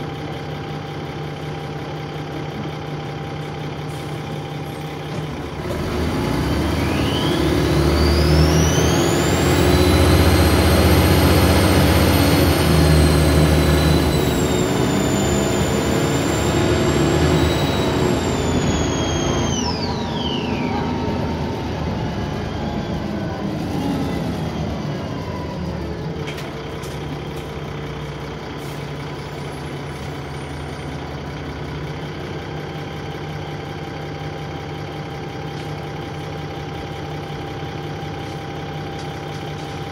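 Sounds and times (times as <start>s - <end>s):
heavy bus engine noise: 0.0s - 39.9s
bus turbo whine: 2.5s - 33.4s.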